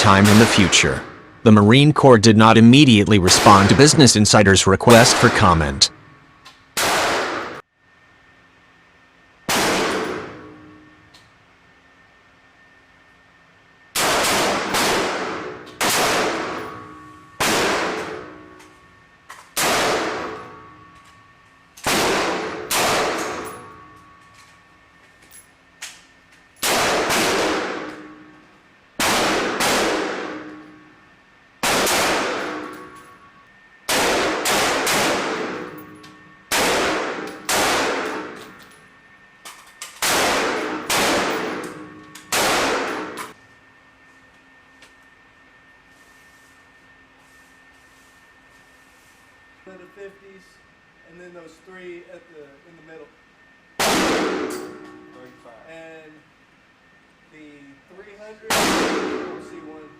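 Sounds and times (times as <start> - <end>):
echoing rifle shots: 0.1 - 1.2, 4.9 - 5.8, 6.8 - 7.6, 9.5 - 10.4, 14.0 - 16.8, 17.4 - 18.3, 19.6 - 20.4, 21.8 - 23.4, 26.6 - 27.9, 29.0 - 30.5, 31.6 - 32.8, 33.9 - 35.8, 36.5 - 38.4, 40.0 - 41.7, 42.3 - 43.2, 53.8 - 54.5, 58.5 - 59.4.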